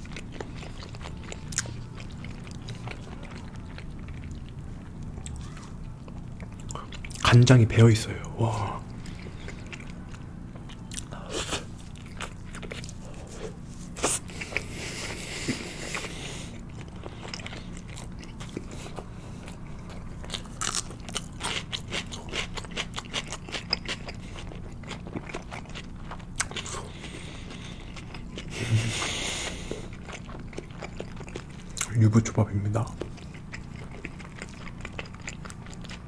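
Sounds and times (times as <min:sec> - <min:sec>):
close chewing: 0:00.0 - 0:07.5, 0:08.5 - 0:36.0.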